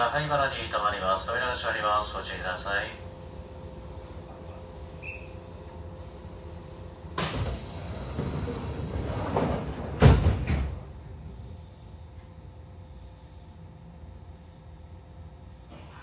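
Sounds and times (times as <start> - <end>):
doors shutting thud: 7.2 - 10.9
sliding doors rushing: 7.2 - 11.5.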